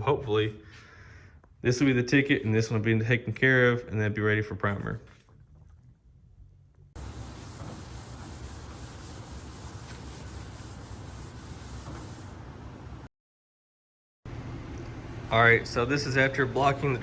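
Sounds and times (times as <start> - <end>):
sanding block scraping sheet metal: 7.0 - 12.4.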